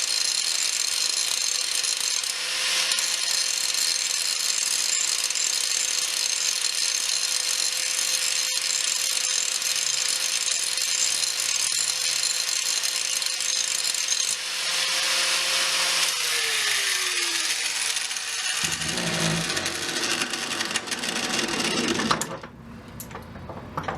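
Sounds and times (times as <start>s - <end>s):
angle grinder grinding steel: 2.0s - 4.4s, 12.7s - 22.4s.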